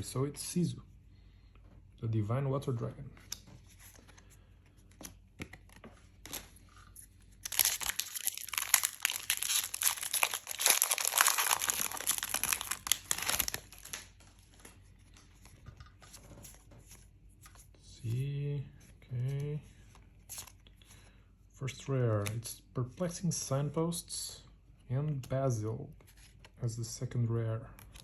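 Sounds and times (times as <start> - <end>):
foil wrapper tearing and crinkling: 7.4 - 14.1.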